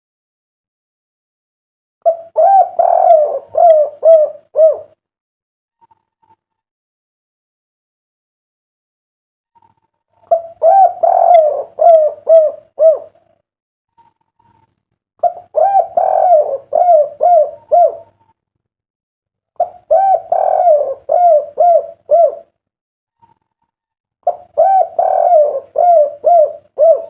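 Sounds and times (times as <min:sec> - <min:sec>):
dove cooing: 0:02.0 - 0:05.0, 0:10.2 - 0:13.3, 0:15.2 - 0:18.2, 0:19.6 - 0:22.6, 0:24.2 - 0:27.0.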